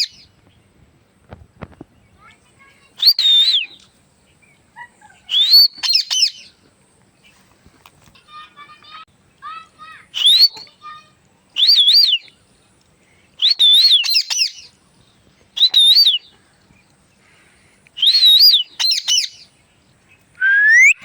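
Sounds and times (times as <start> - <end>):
parrot whistling: 20.4 - 21.0.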